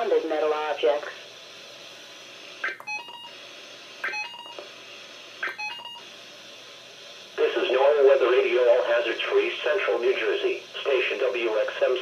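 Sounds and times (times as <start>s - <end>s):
faint radio hiss: 0.0s - 12.0s
warbling digital data tones: 2.6s - 3.3s, 4.0s - 4.6s, 5.4s - 6.0s.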